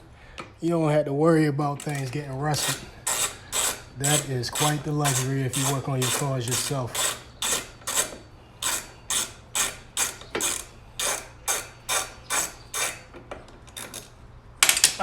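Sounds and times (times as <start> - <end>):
ratchet wrench clicking: 1.8 - 13.1.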